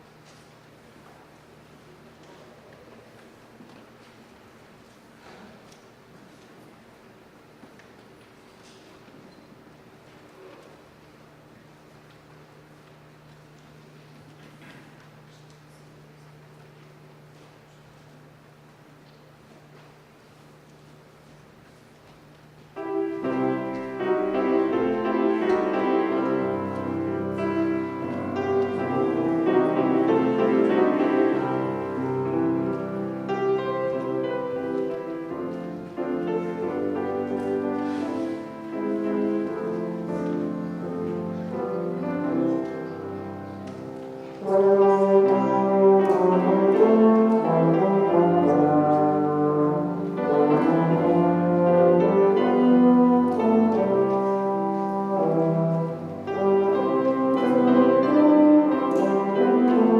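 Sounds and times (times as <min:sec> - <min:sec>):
piano: 0:00.0 - 0:59.9
brass chords: 0:22.8 - 0:59.9.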